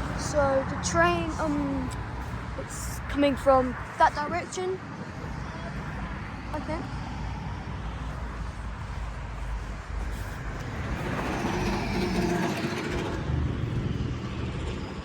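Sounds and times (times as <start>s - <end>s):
traffic noise: 0.0s - 15.0s
vehicle engine running: 8.0s - 15.0s.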